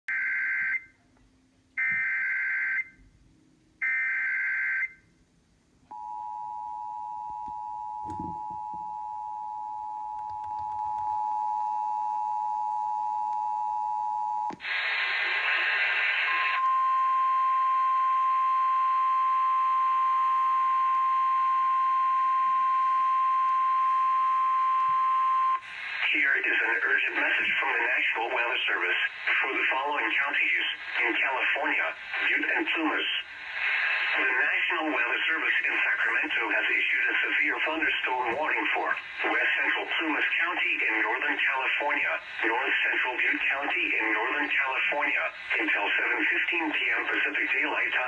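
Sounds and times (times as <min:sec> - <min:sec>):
radio static burst: 0:14.6 - 0:16.6, 0:25.6 - 0:48.0.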